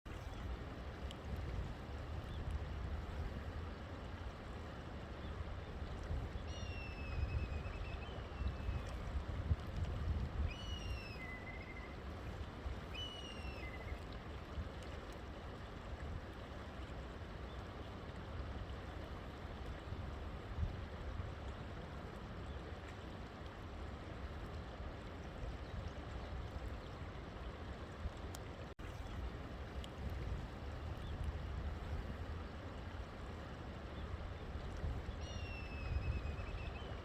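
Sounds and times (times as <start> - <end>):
bird whistled calls: 6.5 - 8.8, 10.5 - 12.0, 12.9 - 14.0, 35.2 - 37.0.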